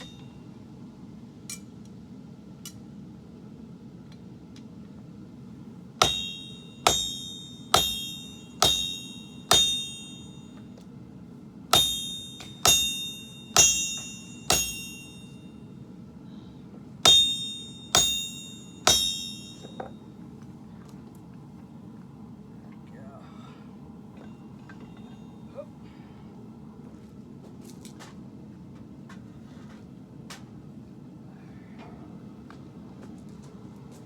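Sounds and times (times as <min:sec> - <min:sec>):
hammer striking blade on anvil: 0:06.0 - 0:10.6, 0:11.7 - 0:15.4, 0:17.0 - 0:19.9.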